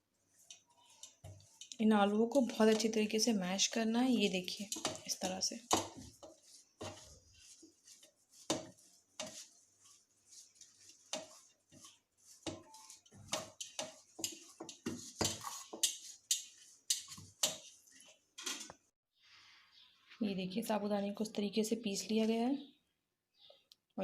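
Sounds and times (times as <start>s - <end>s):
potatoes squelching: 0.3s - 18.2s.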